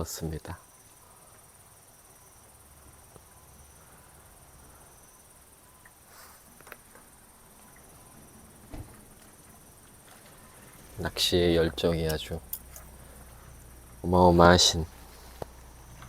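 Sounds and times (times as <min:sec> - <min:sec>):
insects trilling: 0:00.0 - 0:16.0
dull thump: 0:08.6 - 0:09.2.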